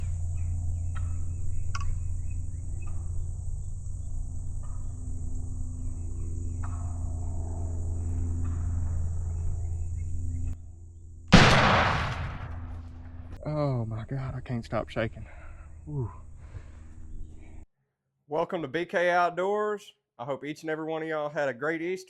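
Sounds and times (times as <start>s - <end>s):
shotgun blast: 11.3s - 13.2s.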